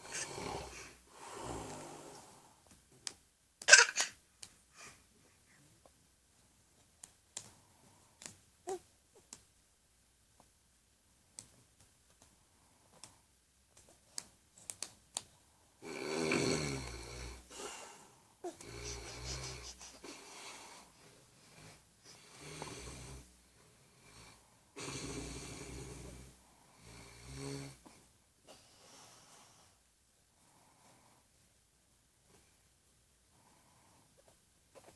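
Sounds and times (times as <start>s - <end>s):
man snoring: 0.0s - 2.5s, 15.8s - 17.8s, 18.6s - 19.8s, 21.4s - 23.3s, 24.0s - 27.8s.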